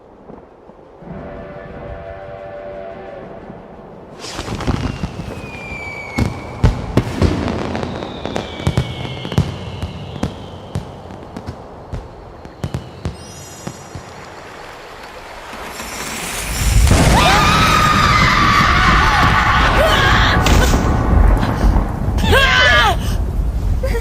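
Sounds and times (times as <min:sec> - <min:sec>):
fireworks bangs: 0:04.0 - 0:23.8
fireworks crackling: 0:04.0 - 0:24.0
whistling firework shells: 0:04.1 - 0:21.8.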